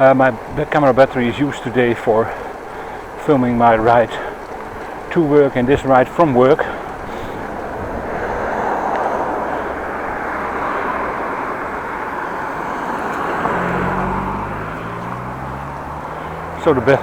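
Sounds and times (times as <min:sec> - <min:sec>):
passing road traffic: 0:00.0 - 0:17.0
wind rushing: 0:05.6 - 0:15.5.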